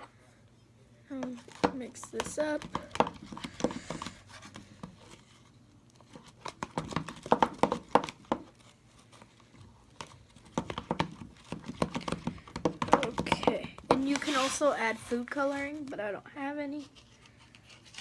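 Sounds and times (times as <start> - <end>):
utensil stirring slime in container: 1.3 - 5.5, 6.1 - 15.8.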